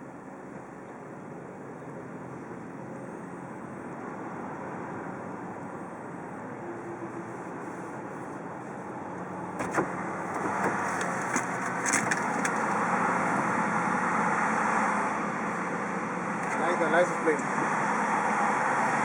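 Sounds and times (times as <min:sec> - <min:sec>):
car engine and road noise: 0:00.0 - 0:19.0.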